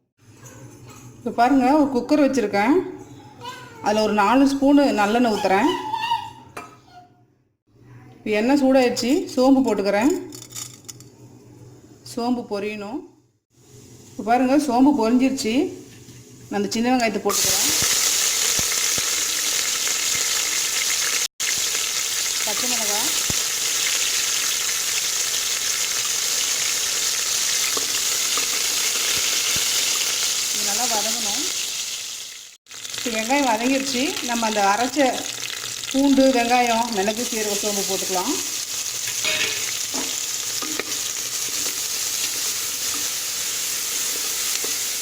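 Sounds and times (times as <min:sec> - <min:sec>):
food sizzling in oil: 0:13.5 - 0:45.0.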